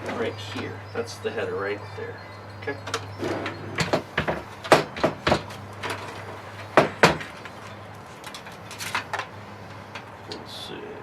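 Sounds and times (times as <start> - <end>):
cables clicking against metal case: 2.8 - 10.4.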